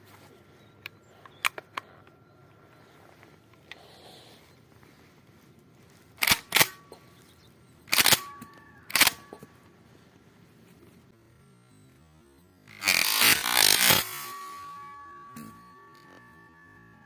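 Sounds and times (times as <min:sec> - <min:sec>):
small metallic clicks: 0:00.8 - 0:02.2, 0:06.2 - 0:09.7
shotgun action metallic clacks: 0:06.2 - 0:07.0, 0:07.9 - 0:09.5.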